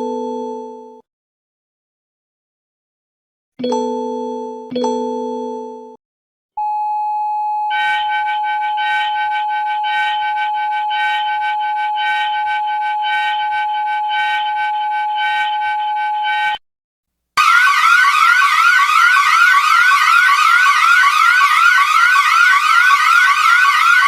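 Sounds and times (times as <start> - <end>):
steady electronic alarm tone: 6.6 - 16.6, 17.4 - 24.0.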